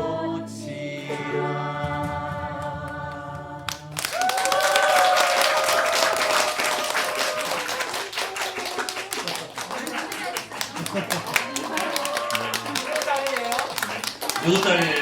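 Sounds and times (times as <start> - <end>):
audience applauding: 3.7 - 15.0
audience cheering: 4.0 - 15.0.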